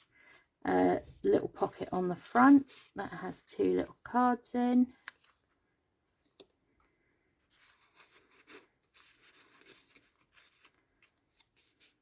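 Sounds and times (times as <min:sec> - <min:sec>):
paper rustling and crinkling: 0:07.4 - 0:12.0.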